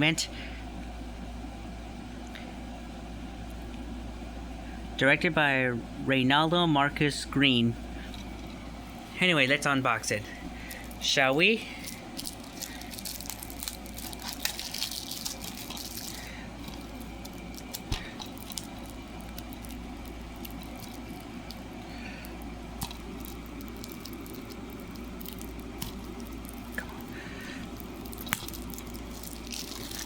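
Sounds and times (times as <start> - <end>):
steady low hum: 0.0 - 30.0
plastic wrap crinkling: 10.2 - 30.0.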